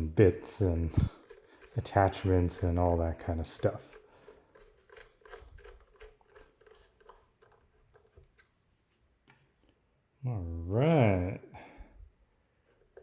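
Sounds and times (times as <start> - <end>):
screwdriver clicking on screws: 0.3 - 8.4.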